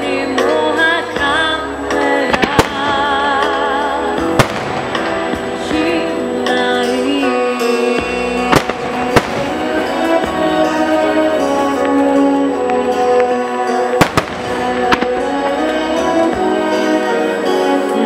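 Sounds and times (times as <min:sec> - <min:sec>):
music over loudspeakers: 0:00.0 - 0:18.0
firework bangs: 0:02.0 - 0:06.2, 0:07.6 - 0:17.1.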